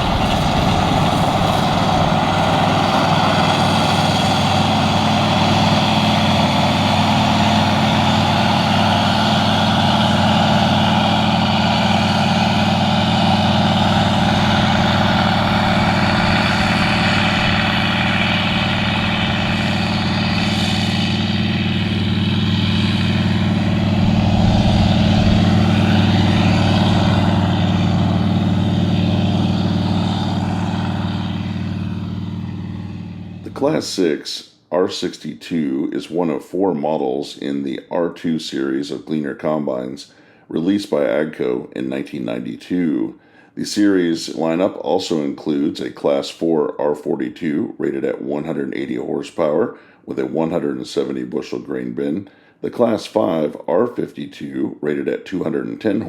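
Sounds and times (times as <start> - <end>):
machine rushing noise: 0.0 - 6.6, 8.1 - 33.6
combine engine droning: 0.0 - 34.2.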